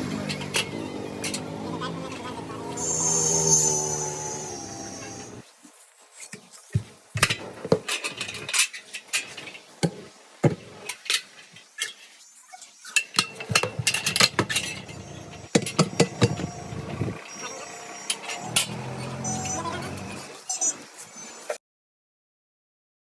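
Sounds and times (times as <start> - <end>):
metal tools striking wheel rim: 13.0 - 16.8.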